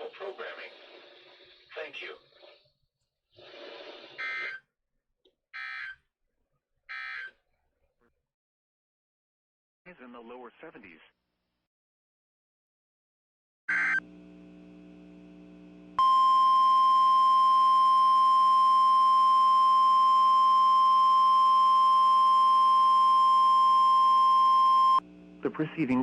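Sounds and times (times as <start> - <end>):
steady alarm beep: 16.0 - 25.0
faint radio hum: 25.4 - 26.0.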